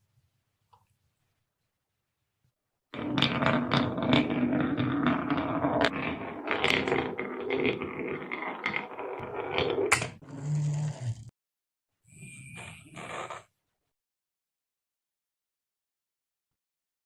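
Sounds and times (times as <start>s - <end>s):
marbles clacking: 3.0s - 10.2s
marbles rolling on wooden track: 3.0s - 11.0s.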